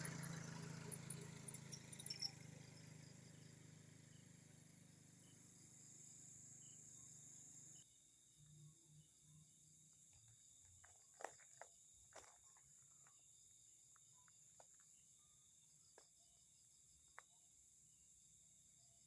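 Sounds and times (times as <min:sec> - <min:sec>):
crickets and insects trilling: 0:00.0 - 0:07.8.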